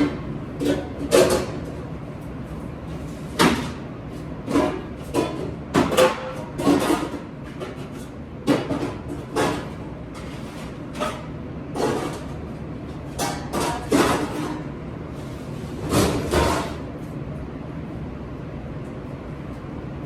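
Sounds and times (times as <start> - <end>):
dishes clattering: 0.0 - 1.7, 4.5 - 12.3, 13.1 - 14.7
steady background noise: 0.0 - 20.0.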